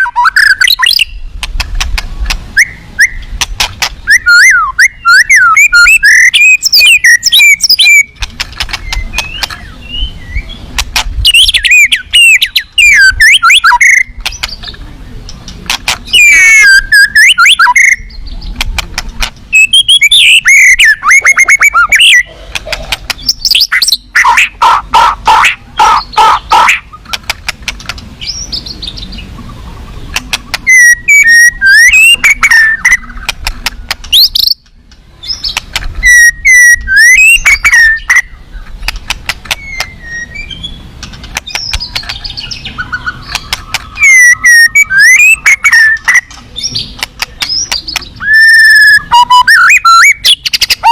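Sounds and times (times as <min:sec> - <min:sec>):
songbird whistling and trilling: 0:00.0 - 0:01.3, 0:02.6 - 0:03.4, 0:04.0 - 0:14.7, 0:16.0 - 0:18.5, 0:19.5 - 0:22.3, 0:23.2 - 0:24.6, 0:30.5 - 0:34.6, 0:35.2 - 0:38.6, 0:39.5 - 0:50.9.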